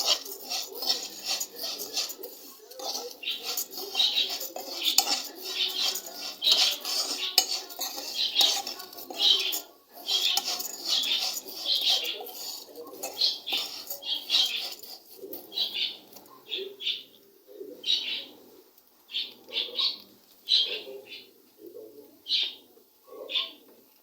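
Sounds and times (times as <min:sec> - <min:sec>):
spoon scraping noodles in pan: 0:00.0 - 0:16.3.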